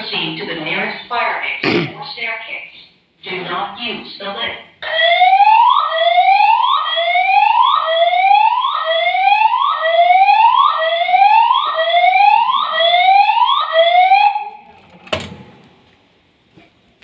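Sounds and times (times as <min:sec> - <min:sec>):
fire alarm whoop tone: 0:04.8 - 0:14.6.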